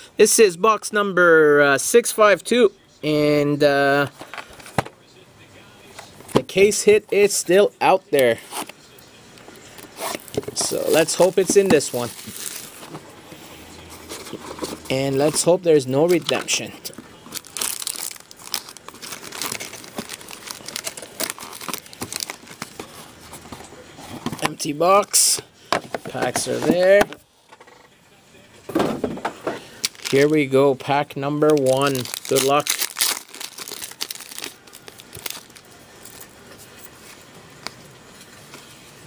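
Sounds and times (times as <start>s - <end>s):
plastic wrapping crinkling and tearing: 10.0s - 13.0s, 16.1s - 23.0s, 29.8s - 30.5s, 31.4s - 36.3s.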